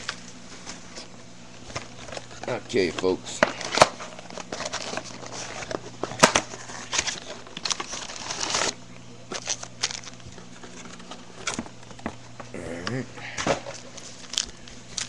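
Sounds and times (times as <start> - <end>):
packaging ripping: 3.6 - 10.3
packaging torn and crinkled: 3.7 - 10.5, 13.9 - 15.0.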